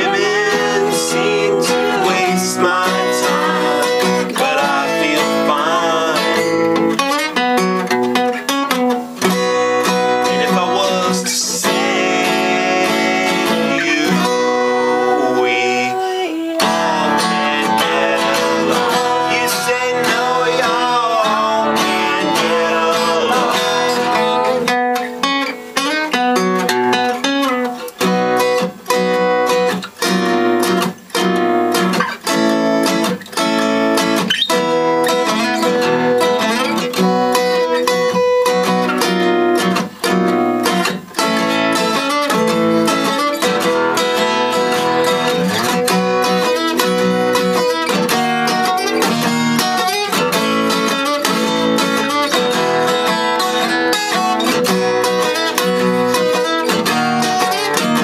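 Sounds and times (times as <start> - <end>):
acoustic guitar strumming and picking: 0.0 - 58.0.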